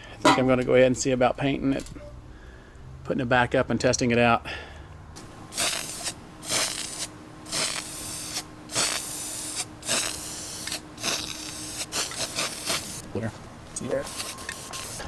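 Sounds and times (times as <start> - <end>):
spray can hissing: 5.5 - 13.0, 14.0 - 15.0.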